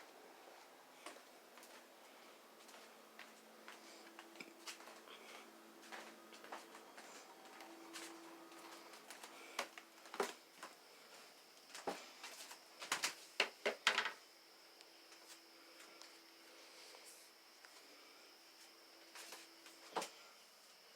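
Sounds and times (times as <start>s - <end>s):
faint steady hum and whine: 0.0s - 20.9s.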